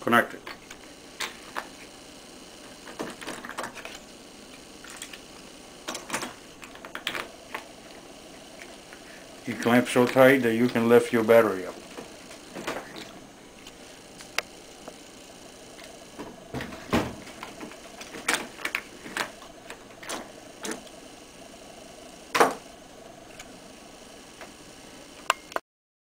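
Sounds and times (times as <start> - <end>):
battery connectors clicking and knocking: 5.8 - 7.7.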